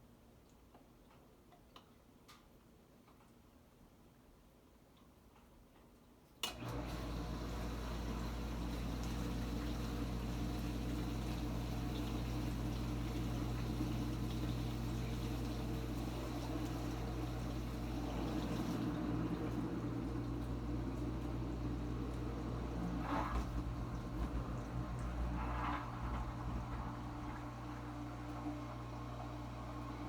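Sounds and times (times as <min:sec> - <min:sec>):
dishwasher motor humming: 0:06.4 - 0:30.0
dishwasher pump motor click: 0:06.4 - 0:30.0
water splashing inside dishwasher: 0:06.6 - 0:30.0.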